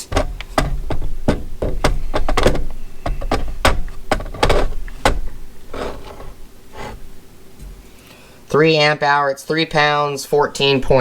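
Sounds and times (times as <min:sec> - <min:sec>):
hard plastic clicks and knocks: 0:00.0 - 0:07.8.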